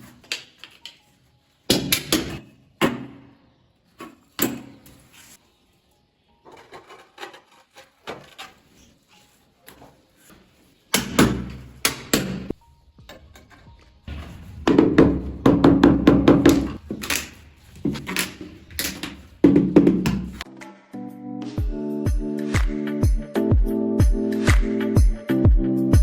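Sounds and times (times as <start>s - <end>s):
loud thuds: 14.0s - 20.4s.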